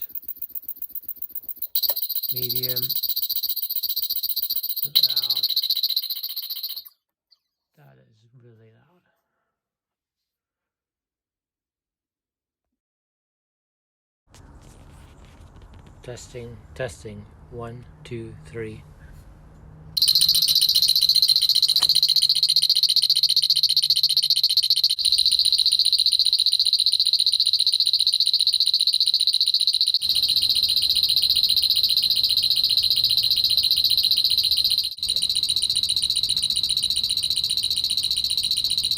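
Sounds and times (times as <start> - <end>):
high-pitched electronic pulsing: 0.0 - 6.9, 20.0 - 38.9.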